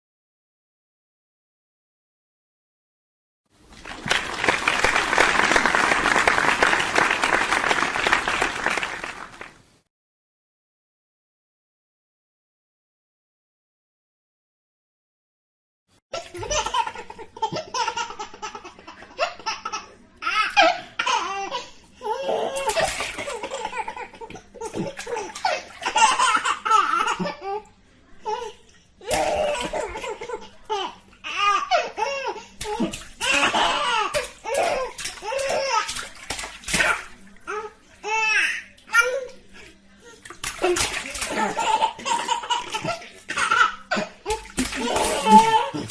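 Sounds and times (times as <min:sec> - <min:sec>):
baby laughing: 0:16.2 - 0:27.6, 0:40.6 - 0:45.9.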